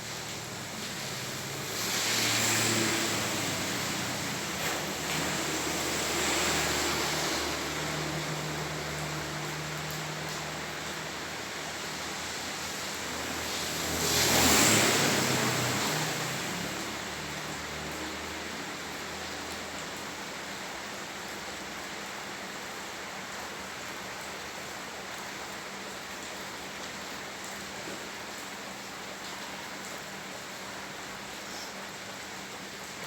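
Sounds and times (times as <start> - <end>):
heavy rain on flooded street: 0.0 - 33.0
vehicle whooshing through water: 0.1 - 10.5, 11.4 - 18.4.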